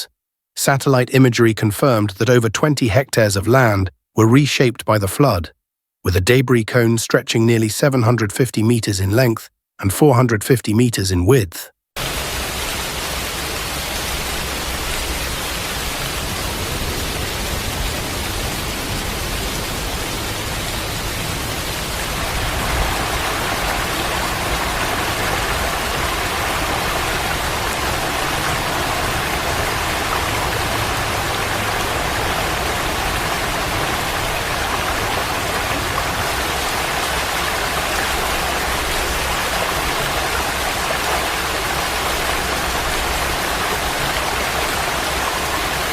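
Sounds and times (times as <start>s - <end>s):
rushing floodwater: 12.0s - 45.9s.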